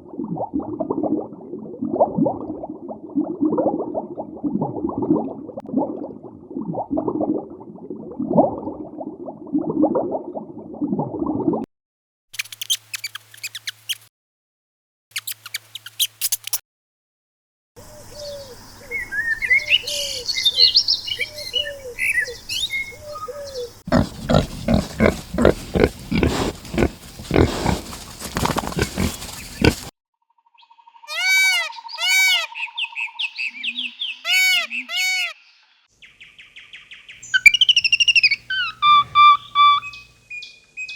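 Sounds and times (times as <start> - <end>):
birds chirping and calling: 18.1 - 29.9, 31.0 - 35.5, 36.2 - 40.9
pulsing animal calls: 23.9 - 29.9, 37.4 - 40.0.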